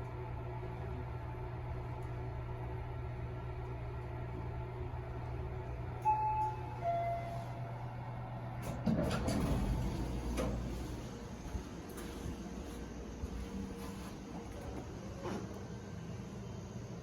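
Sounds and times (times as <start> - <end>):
machinery hum: 0.0 - 17.0
elevator chime two tones: 6.0 - 7.9
sliding doors rumbling: 8.6 - 12.8.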